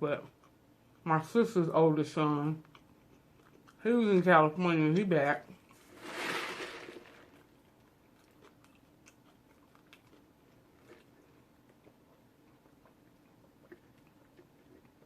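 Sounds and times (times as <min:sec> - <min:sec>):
chewing with mouth clicks: 0:00.2 - 0:01.0, 0:02.6 - 0:03.9, 0:07.4 - 0:15.0.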